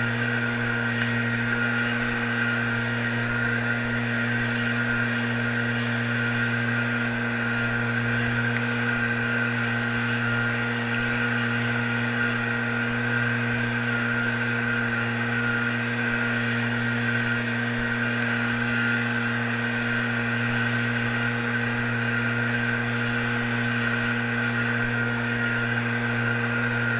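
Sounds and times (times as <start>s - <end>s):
small engine running steadily: 0.0s - 26.9s.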